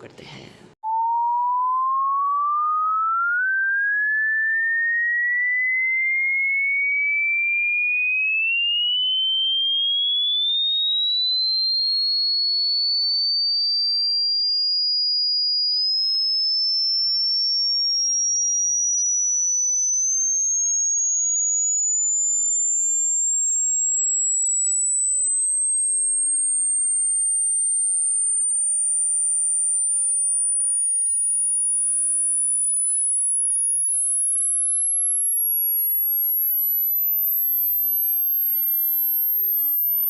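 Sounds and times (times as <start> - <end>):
rising pure electronic tone: 0.8 - 11.3.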